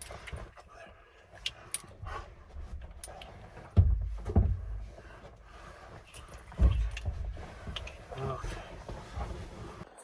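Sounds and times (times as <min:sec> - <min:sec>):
heavy thumps in truck bed: 0:03.7 - 0:05.0, 0:06.6 - 0:07.6.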